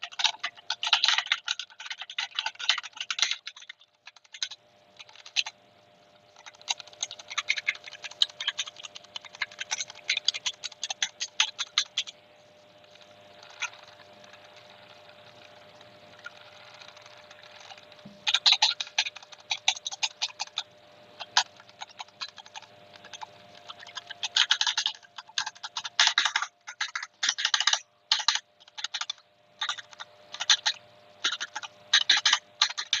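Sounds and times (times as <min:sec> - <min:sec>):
mechanical keyboard typing: 0:00.0 - 0:05.6, 0:06.4 - 0:12.2, 0:15.4 - 0:20.6, 0:21.2 - 0:33.0.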